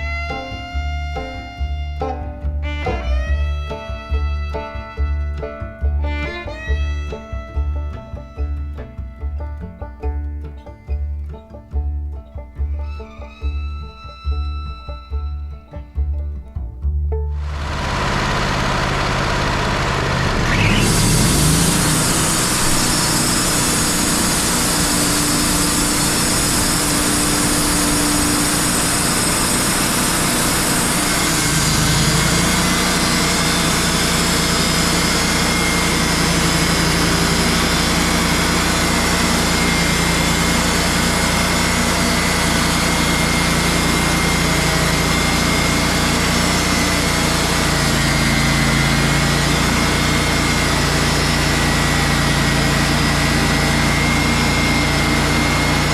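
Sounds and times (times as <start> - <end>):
band sawmill running: 0.0 - 14.4, 17.3 - 55.9.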